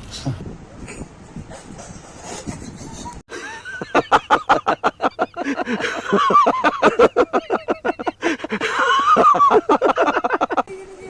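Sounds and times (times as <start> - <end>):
hearty laughter: 2.4 - 10.7.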